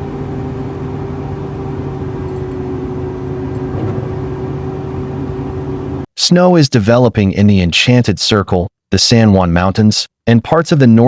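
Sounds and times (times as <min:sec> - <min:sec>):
engine hum: 0:00.0 - 0:06.1
road and wind rush: 0:00.0 - 0:06.1.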